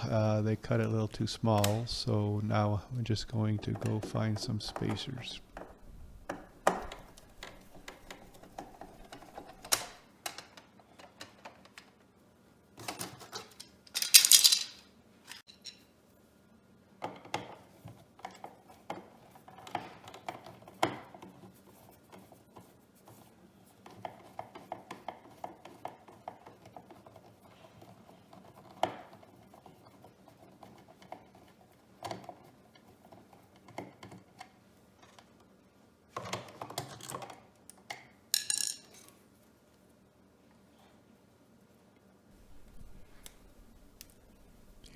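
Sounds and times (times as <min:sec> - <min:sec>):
small hard parts clinking: 0:13.4 - 0:15.9, 0:38.4 - 0:39.1.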